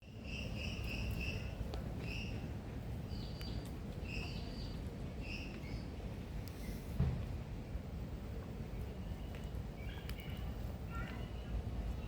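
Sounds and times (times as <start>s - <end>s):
bird calls: 9.2s - 12.0s.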